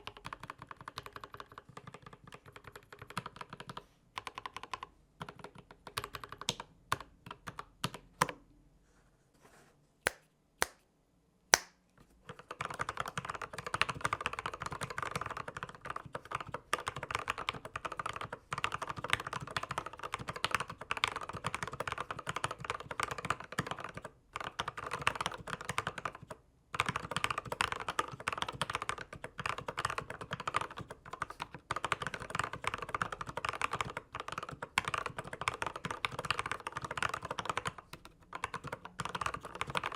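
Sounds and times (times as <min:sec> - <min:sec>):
mechanical keyboard typing: 0:00.0 - 0:08.4, 0:12.3 - 0:39.9.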